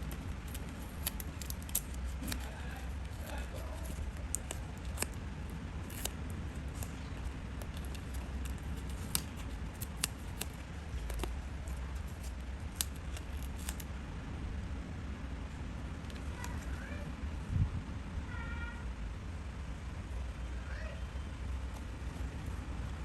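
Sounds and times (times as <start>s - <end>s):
scissors cutting paper: 0.0s - 5.2s, 5.8s - 13.9s
steady low hum: 0.0s - 23.0s.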